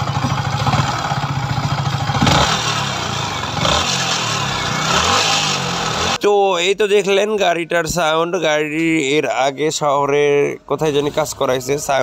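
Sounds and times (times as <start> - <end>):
motorcycle engine idling and revving: 0.0 - 6.2.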